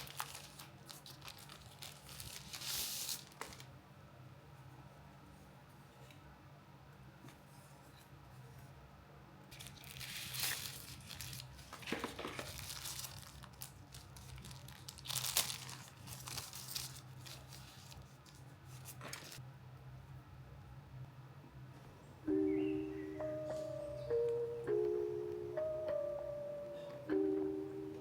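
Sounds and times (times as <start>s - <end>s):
packaging tearing and crinkling: 0.0s - 3.7s, 9.5s - 19.4s.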